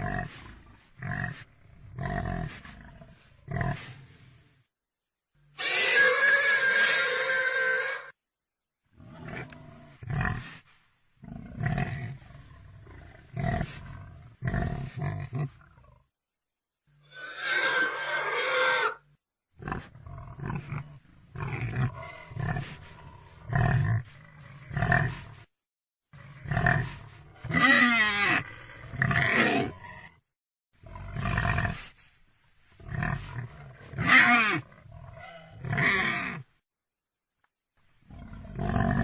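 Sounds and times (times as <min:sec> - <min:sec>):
pig squealing: 0:05.6 - 0:08.1, 0:17.0 - 0:19.0, 0:27.5 - 0:28.4, 0:34.0 - 0:34.6
pigs grunting: 0:11.3 - 0:15.9, 0:19.6 - 0:25.3, 0:26.2 - 0:30.0, 0:32.8 - 0:36.5, 0:38.1 - 0:39.0.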